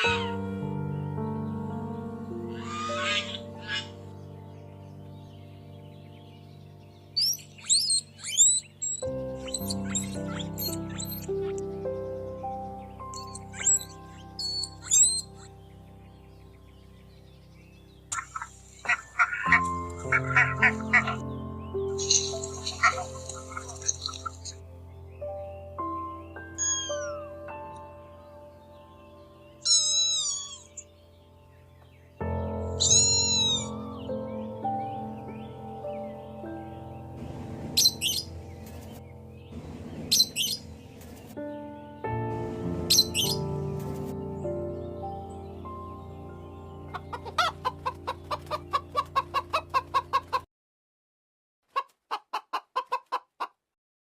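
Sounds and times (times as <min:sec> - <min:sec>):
background music: 0:00.0 - 0:50.4
chicken clucking: 0:18.1 - 0:21.2, 0:46.9 - 0:50.4, 0:51.7 - 0:53.6.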